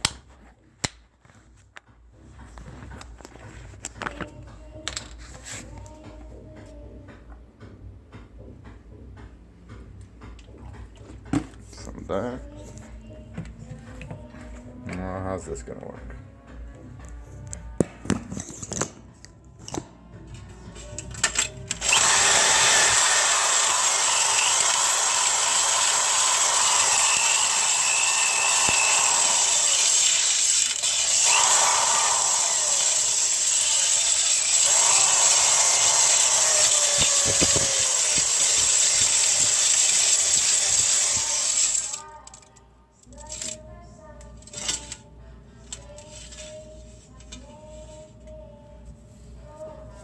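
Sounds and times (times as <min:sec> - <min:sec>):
power drill wire brush on metal: 0:21.8 - 0:42.0.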